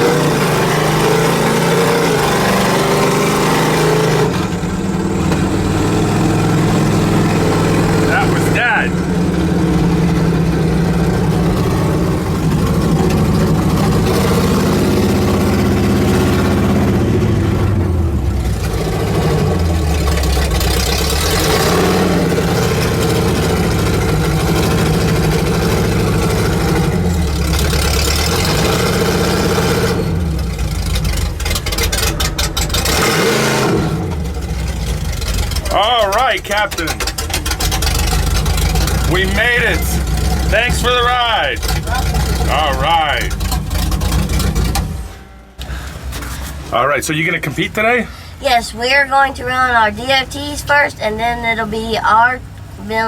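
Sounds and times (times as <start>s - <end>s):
truck engine revving: 0.0s - 53.0s
rapid rattling: 30.5s - 33.0s, 34.3s - 46.7s.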